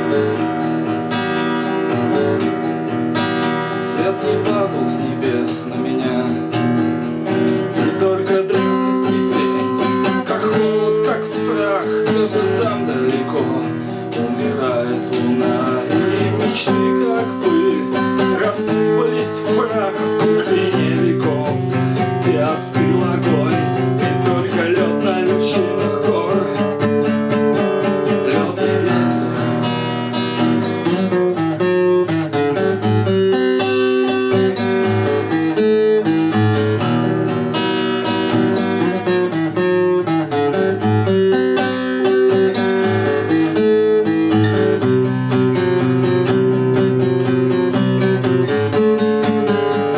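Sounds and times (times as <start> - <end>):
acoustic guitar playing: 0.0 - 49.9
person singing: 3.8 - 6.6, 7.6 - 30.4.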